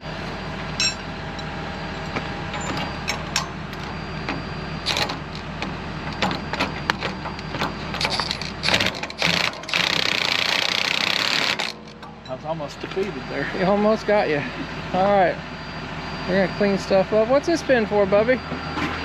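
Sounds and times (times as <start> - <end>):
diesel engine idling: 0.0 - 19.0
metallic clinks of tools: 0.8 - 1.5.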